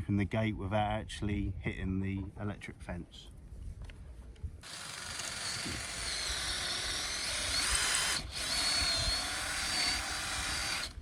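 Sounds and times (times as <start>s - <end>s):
power drill boring into wood: 4.6s - 11.0s.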